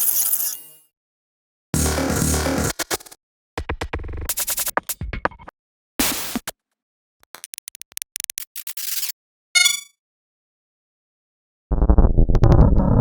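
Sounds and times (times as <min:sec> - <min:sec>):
rapid high clicks: 0:07.2 - 0:09.1
choppy stuttering glitch: 0:07.3 - 0:09.1.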